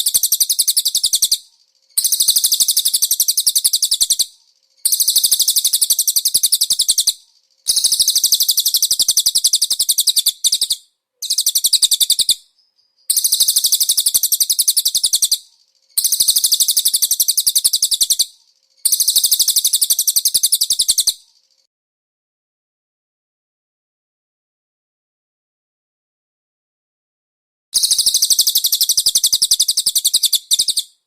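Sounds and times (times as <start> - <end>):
songbird trilling: 0.0 - 4.3, 4.9 - 21.2, 27.8 - 31.0.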